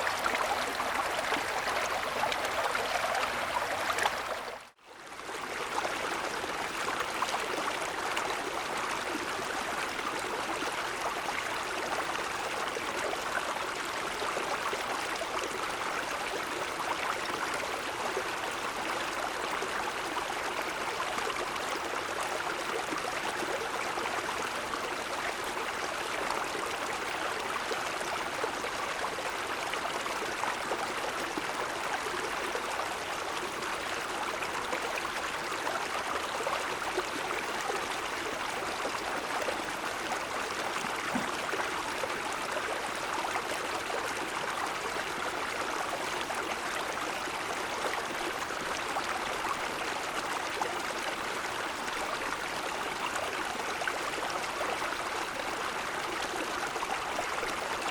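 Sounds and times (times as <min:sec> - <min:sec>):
stream splashing over stones: 0:00.0 - 0:04.8, 0:38.7 - 0:44.2.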